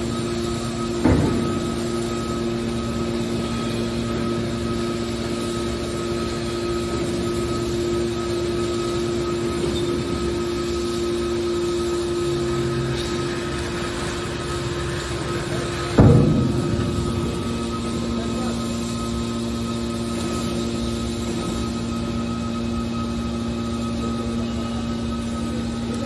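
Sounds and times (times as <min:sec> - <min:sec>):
steady mechanical drone: 0:00.0 - 0:26.0
short knock: 0:01.0 - 0:02.3, 0:16.0 - 0:19.0.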